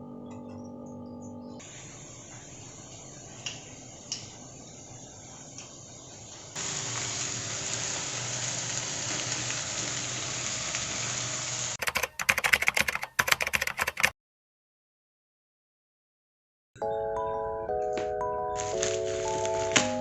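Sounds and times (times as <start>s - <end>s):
kitchen tap water running: 6.6s - 11.8s.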